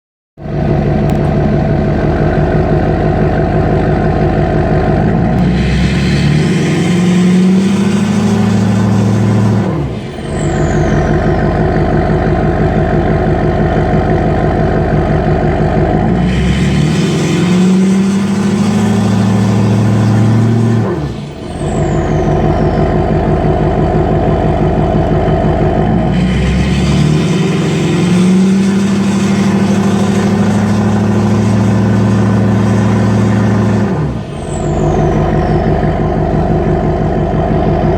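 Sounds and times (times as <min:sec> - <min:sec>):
diesel engine revving: 0:00.4 - 0:37.9
turbo whistle: 0:05.4 - 0:12.2, 0:16.2 - 0:24.4, 0:26.1 - 0:37.9.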